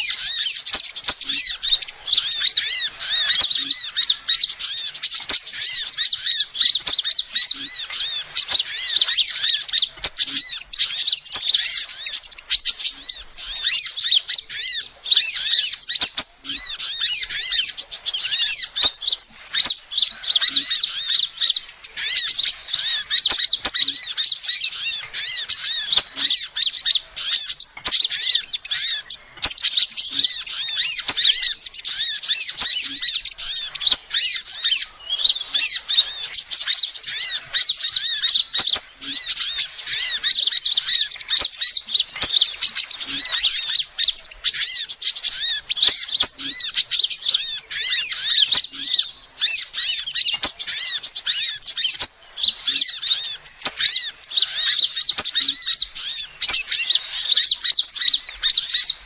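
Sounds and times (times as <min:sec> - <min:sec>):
sunbird chirping: 0:00.0 - 0:59.0.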